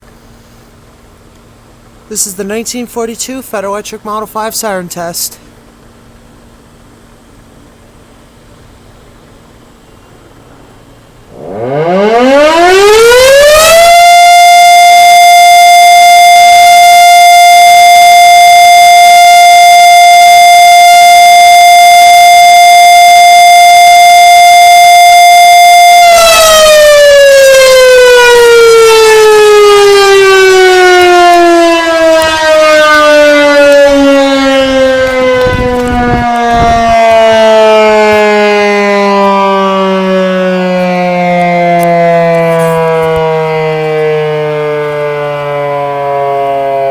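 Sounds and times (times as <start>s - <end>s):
electric siren wailing: 10.3s - 46.9s.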